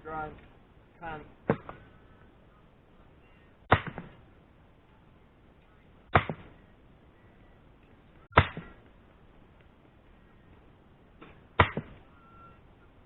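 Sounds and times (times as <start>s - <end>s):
sledgehammer striking steel wedge: 3.7s - 4.2s, 6.1s - 6.5s, 8.3s - 8.8s.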